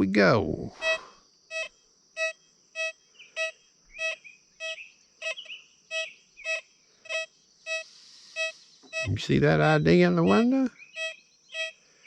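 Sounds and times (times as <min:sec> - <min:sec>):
birds chirping faintly: 0:00.0 - 0:12.0
metal detector beeping: 0:00.8 - 0:11.8
steady high hiss: 0:07.5 - 0:10.7.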